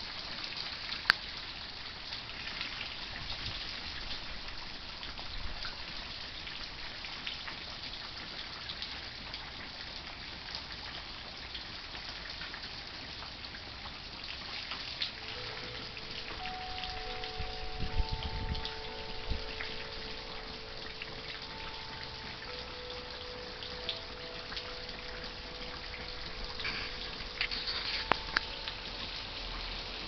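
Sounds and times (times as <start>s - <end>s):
rain pattering: 0.0s - 30.0s
wind chimes ringing: 15.2s - 30.0s.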